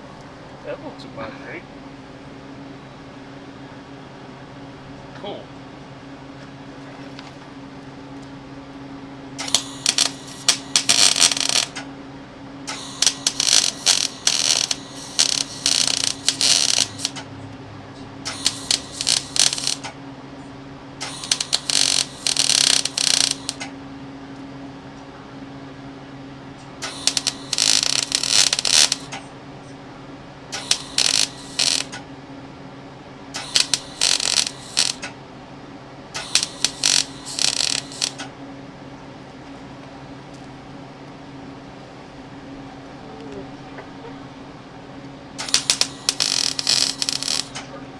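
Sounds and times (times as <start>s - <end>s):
steady low hum: 0.0s - 47.9s
electric welder crackling: 9.4s - 11.9s, 12.6s - 17.3s, 18.2s - 20.0s, 21.0s - 23.8s, 26.8s - 29.2s, 30.5s - 32.1s, 33.3s - 35.2s, 36.1s - 38.3s, 45.4s - 47.7s.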